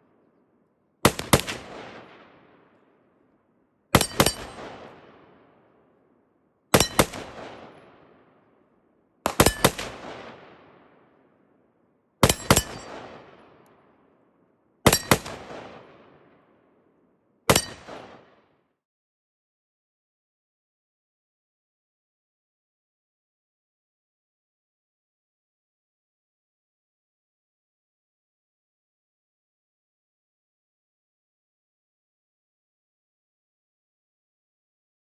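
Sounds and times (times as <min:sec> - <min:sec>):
rifle shots echoing: 0:01.0 - 0:02.8, 0:03.9 - 0:05.6, 0:06.7 - 0:08.3, 0:09.2 - 0:11.1, 0:12.2 - 0:13.7, 0:14.8 - 0:16.3, 0:17.5 - 0:18.4.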